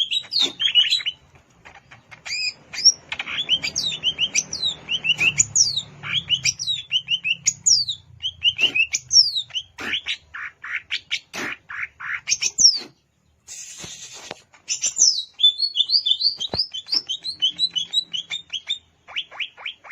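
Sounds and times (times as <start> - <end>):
bird singing chirps and whistles: 0.0 - 1.2, 2.3 - 9.7, 14.7 - 19.9
brief hiss: 13.4 - 14.5.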